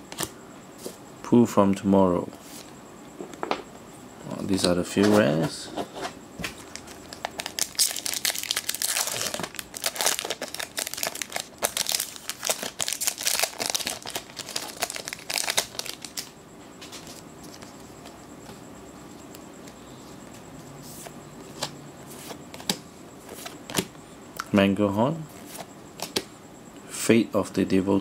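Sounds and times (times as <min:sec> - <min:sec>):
foil wrapper tearing and crinkling: 0:06.7 - 0:16.3.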